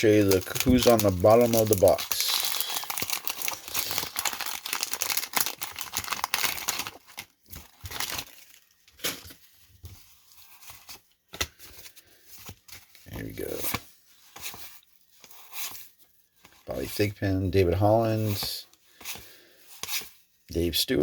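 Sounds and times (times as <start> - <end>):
paper wrapper tearing and crinkling: 0.0 - 9.4.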